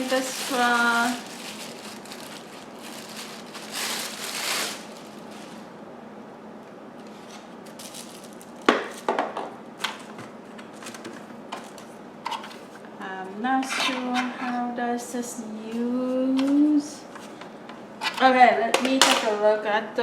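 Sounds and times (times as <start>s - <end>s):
plastic packaging rustle: 0.0s - 5.8s, 7.0s - 9.2s, 9.8s - 12.8s.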